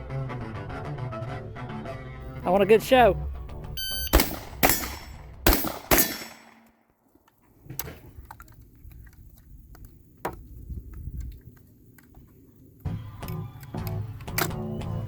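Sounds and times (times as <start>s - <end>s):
gunshots ringing: 4.0s - 6.8s.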